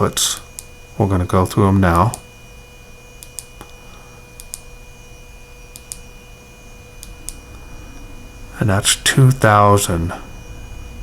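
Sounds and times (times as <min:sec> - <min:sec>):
faint steady hum: 0:00.0 - 0:11.0
flashlight switch clicks: 0:03.2 - 0:03.8, 0:04.4 - 0:04.7, 0:05.7 - 0:06.1, 0:07.0 - 0:07.4.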